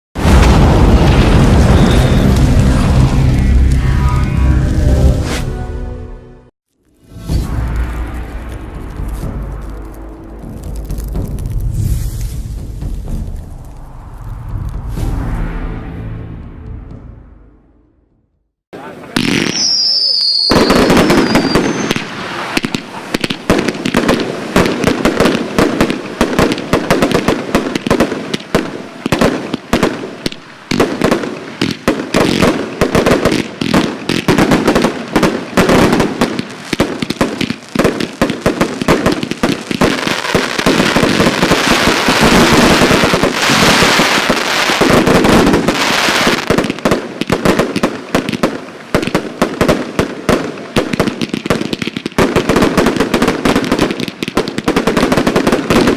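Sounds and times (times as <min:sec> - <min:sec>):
firework cake volley: 0:00.2 - 0:03.8, 0:18.7 - 0:55.9.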